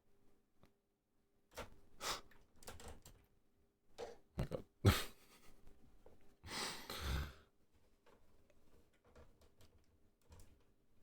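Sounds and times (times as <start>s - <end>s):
person sighing: 6.5s - 7.4s.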